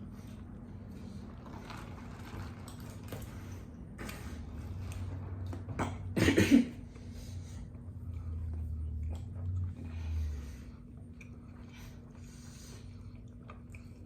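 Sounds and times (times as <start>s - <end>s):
faint clicking eating noises: 0.0s - 6.2s, 6.9s - 14.0s
loud cough: 5.8s - 6.8s.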